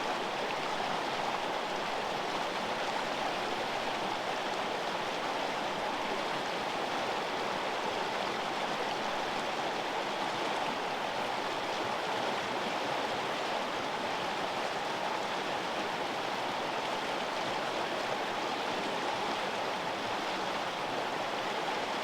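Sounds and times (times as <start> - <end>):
river flowing: 0.0 - 22.0.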